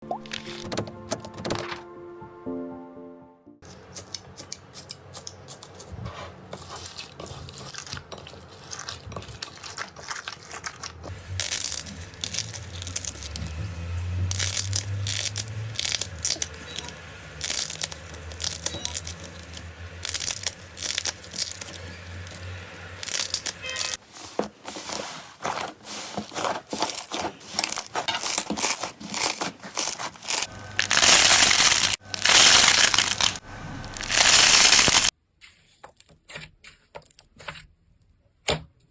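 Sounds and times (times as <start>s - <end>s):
slime crackling and clicking: 14.3s - 22.4s, 23.0s - 24.0s, 27.6s - 35.1s.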